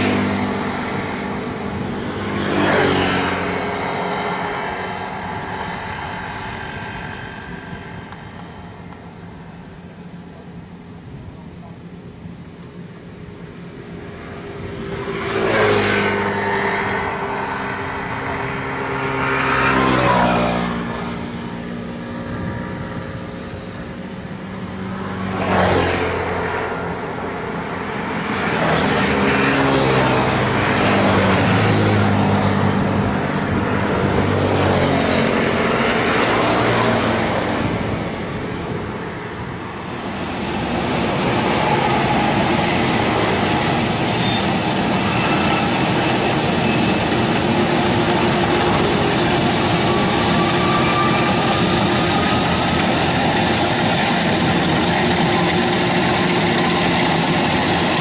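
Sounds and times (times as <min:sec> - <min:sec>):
harvester diesel engine revving: 0:36.6 - 0:58.0.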